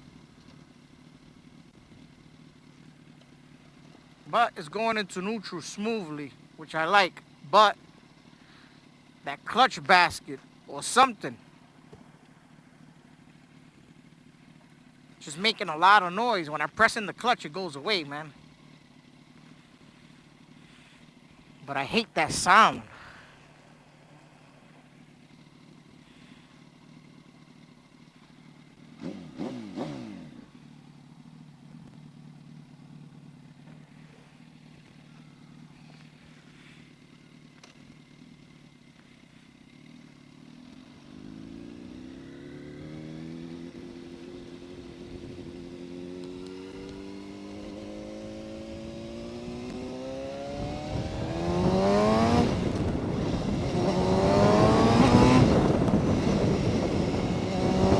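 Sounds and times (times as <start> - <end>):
motorcycle engine idling: 0.0 - 57.9
motorcycle accelerating through gears: 22.3 - 57.9.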